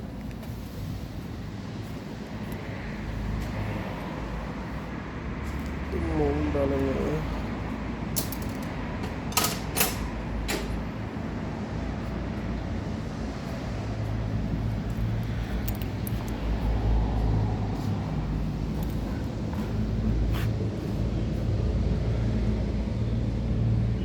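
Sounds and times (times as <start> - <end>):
sharp clicks and knocks: 8.2 - 10.8.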